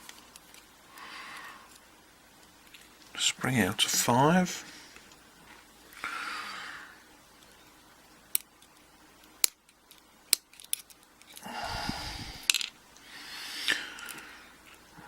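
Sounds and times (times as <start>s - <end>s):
small metallic clicks: 8.3s - 11.4s.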